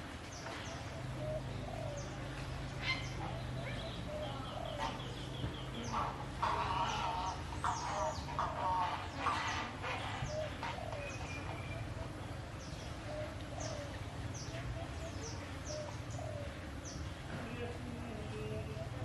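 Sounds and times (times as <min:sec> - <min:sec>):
harsh animal calls: 0:00.8 - 0:12.4.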